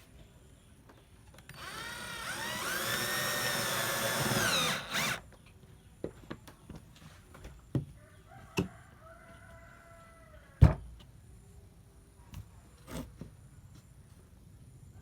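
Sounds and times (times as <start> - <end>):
rooster crowing: 8.0 - 10.6.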